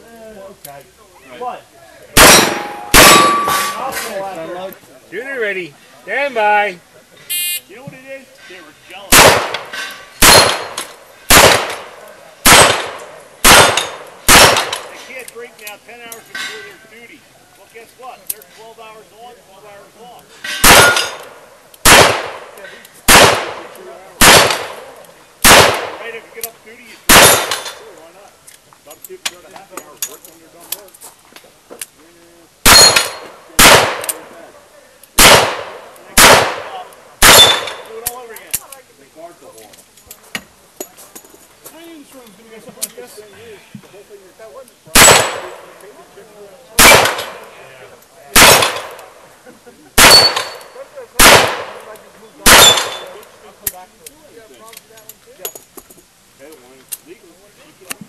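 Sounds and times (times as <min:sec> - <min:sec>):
revolver gunshots: 0:02.2 - 0:03.8, 0:09.1 - 0:15.0, 0:20.6 - 0:26.2, 0:27.1 - 0:27.9, 0:32.6 - 0:34.3, 0:35.2 - 0:37.9, 0:45.0 - 0:45.7, 0:46.8 - 0:47.5, 0:48.3 - 0:49.2, 0:50.0 - 0:53.2.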